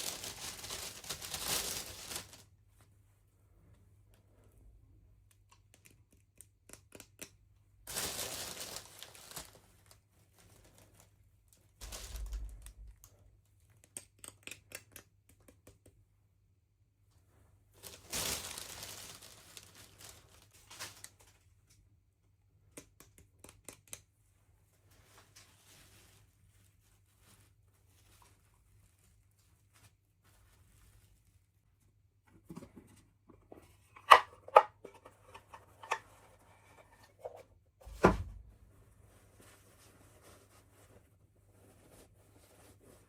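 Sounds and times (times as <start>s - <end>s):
packaging crinkling and tearing: 0.0s - 2.4s, 7.9s - 11.1s, 11.8s - 13.1s, 17.8s - 21.4s
small clicks and taps: 5.2s - 7.5s, 12.6s - 16.2s, 22.6s - 24.1s.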